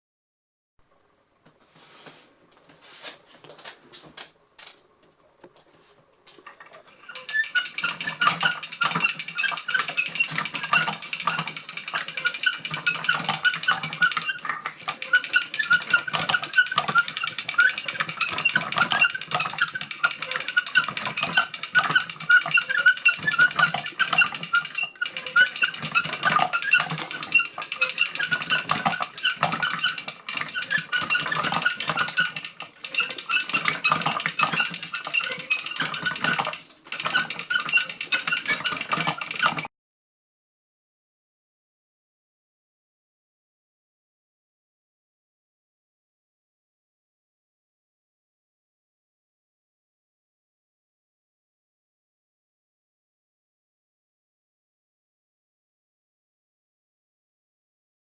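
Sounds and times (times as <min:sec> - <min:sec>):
wooden mechanism clattering: 0:06.4 - 0:39.7.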